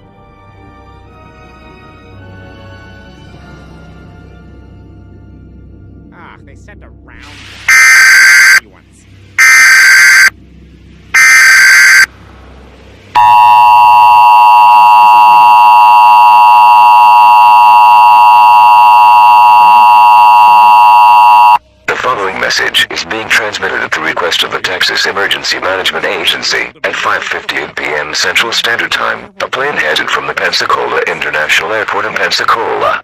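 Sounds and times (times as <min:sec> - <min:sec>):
harsh electronic data squawks: 0:07.7 - 0:08.6, 0:09.4 - 0:10.3, 0:11.2 - 0:12.1, 0:13.2 - 0:21.6
two-tone alert alarm: 0:07.7 - 0:08.6, 0:09.4 - 0:10.3, 0:11.2 - 0:12.1, 0:13.2 - 0:21.6
steady low drone: 0:08.6 - 0:27.0.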